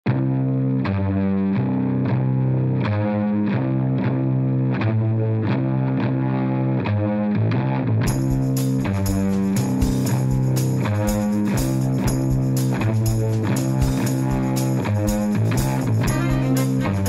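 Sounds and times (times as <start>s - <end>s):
distorted electric guitar: 0.0s - 17.0s.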